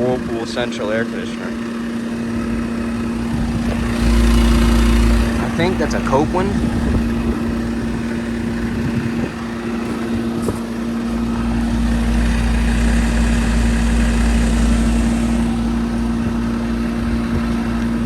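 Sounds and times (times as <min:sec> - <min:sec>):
compressor humming: 0:00.0 - 0:18.0
condenser fan rushing: 0:00.0 - 0:18.0
low rumble: 0:02.1 - 0:18.0.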